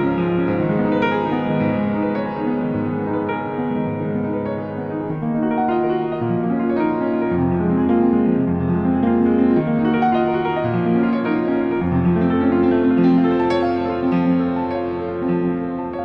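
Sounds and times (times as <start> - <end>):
slow piano piece: 0.0 - 16.0.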